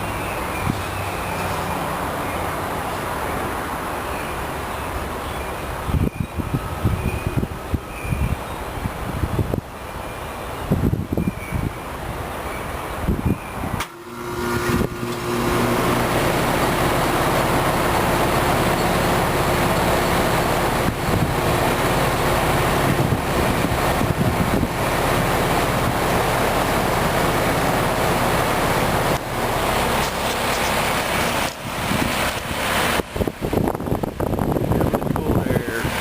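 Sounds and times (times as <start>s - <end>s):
rushing air: 10.6s - 36.0s
heat pump hum: 11.9s - 36.0s.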